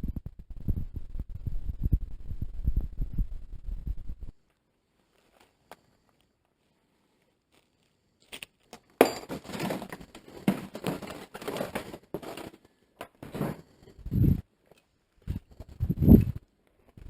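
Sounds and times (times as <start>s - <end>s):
dry debris crunching: 8.3s - 13.8s.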